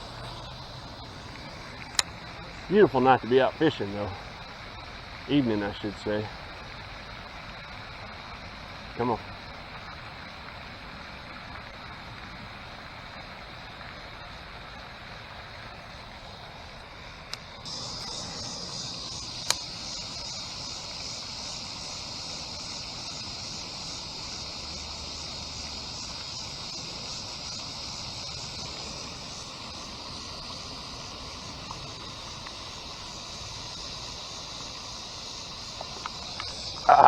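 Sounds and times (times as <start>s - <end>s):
insects droning: 0.0s - 37.0s.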